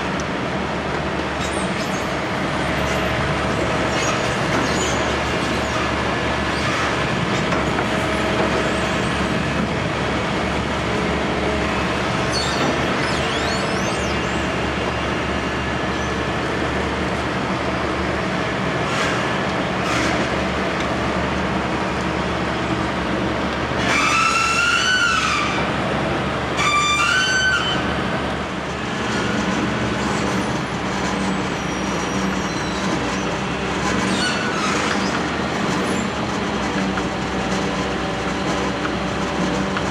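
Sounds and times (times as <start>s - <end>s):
construction machinery engine hum: 0.0s - 39.9s
high-pitched metallic squeals: 11.7s - 15.1s, 23.8s - 25.7s, 26.5s - 28.0s, 29.1s - 36.1s.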